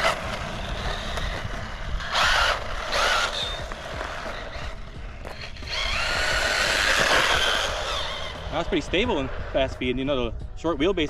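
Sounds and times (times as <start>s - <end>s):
electric motor whining: 0.0s - 10.0s.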